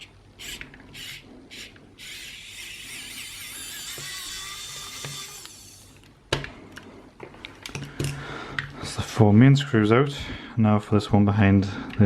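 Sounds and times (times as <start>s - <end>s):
electric screwdriver whining: 0.0s - 6.1s.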